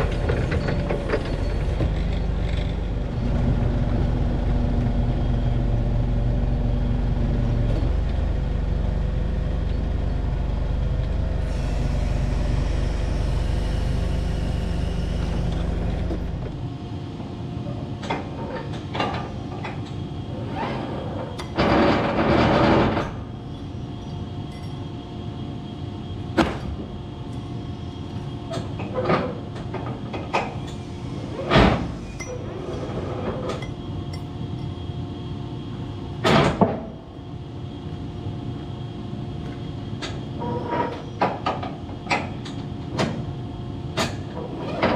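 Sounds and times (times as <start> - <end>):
engine running: 0.0 - 16.6.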